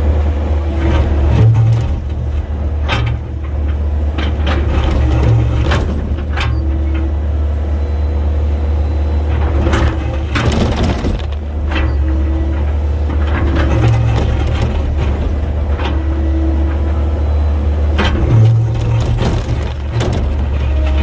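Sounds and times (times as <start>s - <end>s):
excavator diesel engine running: 0.0s - 21.0s
bucket knocking and scraping rock: 18.2s - 21.0s.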